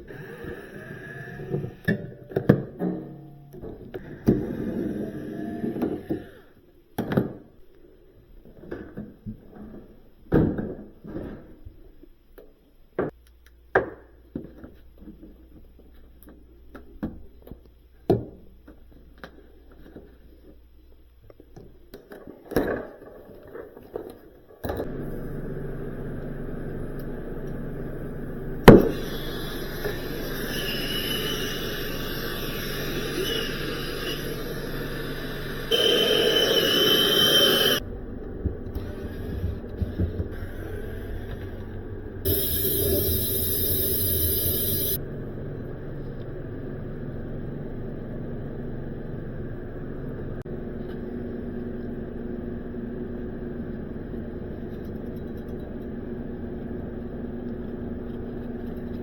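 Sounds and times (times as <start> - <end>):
steady machine hum: 24.8 - 58.9.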